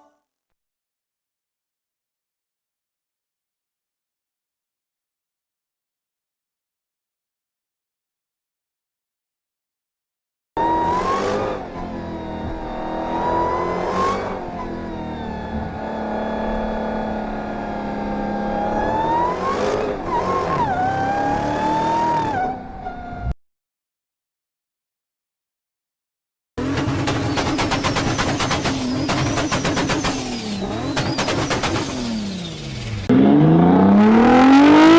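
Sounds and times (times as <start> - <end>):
vehicle engine revving: 10.6 - 23.3, 26.6 - 34.9
fast rattling sound effect: 26.7 - 33.0.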